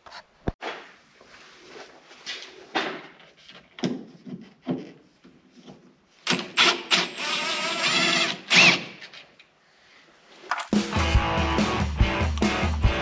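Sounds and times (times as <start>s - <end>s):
cordless drill whirring: 6.6s - 8.8s.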